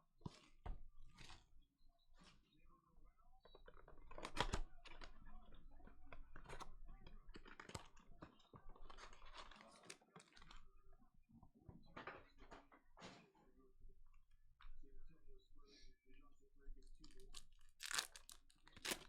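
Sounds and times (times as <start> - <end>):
plastic wrap and cardboard crinkling: 17.0 - 19.0.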